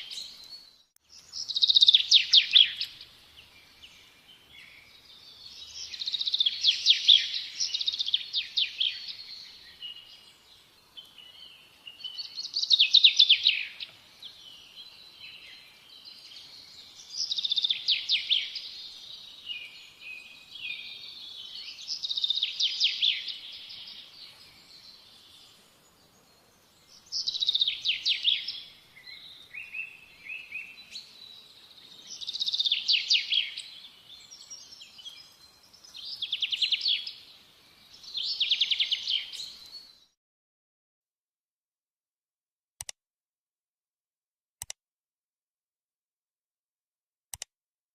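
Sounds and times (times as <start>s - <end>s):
songbird chirping and trilling: 0.0s - 40.2s.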